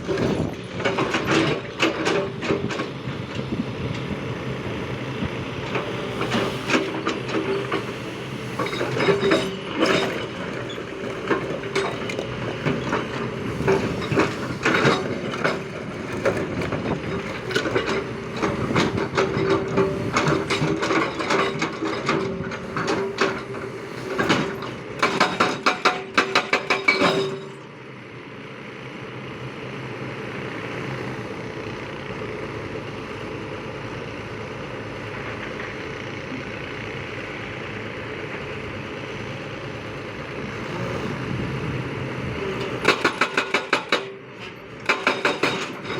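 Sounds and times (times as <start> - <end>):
digger engine running: 0.0 - 45.9.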